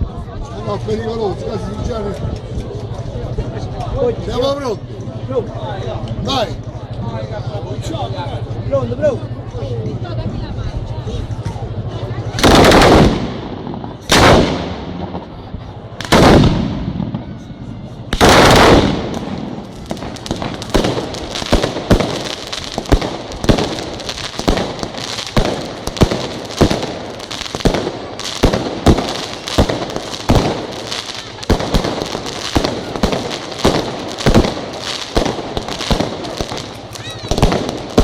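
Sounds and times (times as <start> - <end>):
firecracker bangs and crackling: 12.3 - 38.0.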